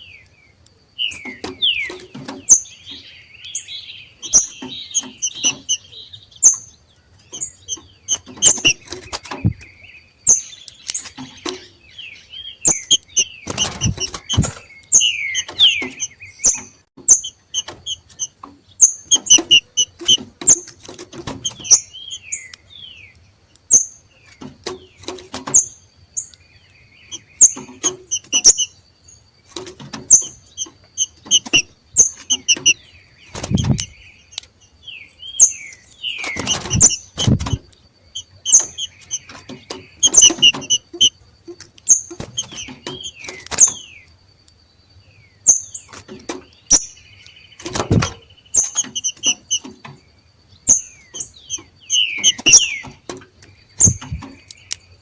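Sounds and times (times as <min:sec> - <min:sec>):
bird sharp repeated calls: 0:01.0 - 0:11.8, 0:12.4 - 0:22.9, 0:27.0 - 0:28.8, 0:29.8 - 0:34.5, 0:35.3 - 0:41.2, 0:46.6 - 0:49.9, 0:50.6 - 0:53.0
sharp clicks: 0:04.2 - 0:05.9, 0:07.3 - 0:09.7, 0:10.3 - 0:11.7, 0:12.6 - 0:23.7, 0:26.3 - 0:28.7, 0:29.5 - 0:34.6, 0:35.7 - 0:43.8, 0:45.9 - 0:50.0, 0:50.7 - 0:54.9
low thumps: 0:13.1 - 0:14.7, 0:33.4 - 0:33.9, 0:36.4 - 0:37.7, 0:47.7 - 0:48.2, 0:53.8 - 0:54.4.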